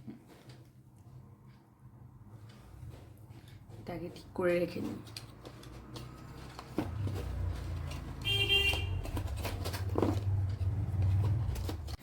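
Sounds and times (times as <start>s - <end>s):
high horn toot: 8.2s - 9.2s.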